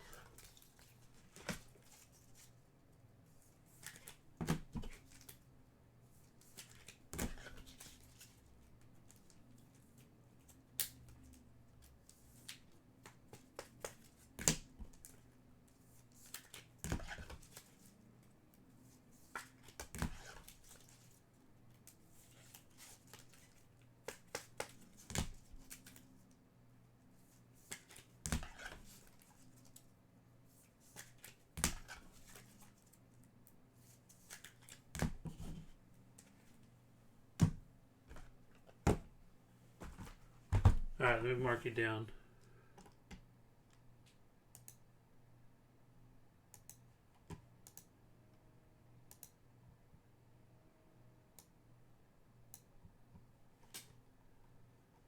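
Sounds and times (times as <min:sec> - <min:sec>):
cards tapping and clicking: 0:12.6 - 0:15.1, 0:23.0 - 0:26.0.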